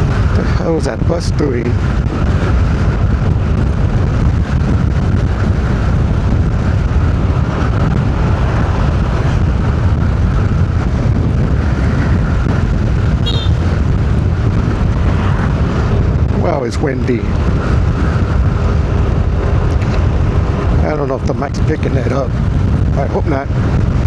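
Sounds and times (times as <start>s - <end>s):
road noise: 0.0s - 24.0s
wind buffeting microphone: 0.0s - 24.0s
brief high chirp: 13.2s - 13.6s.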